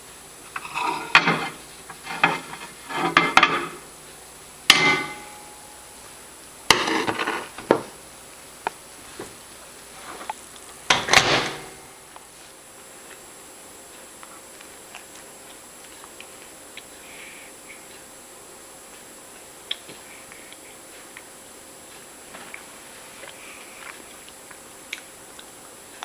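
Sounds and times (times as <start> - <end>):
dishes and utensils clattering: 0.5 - 3.8.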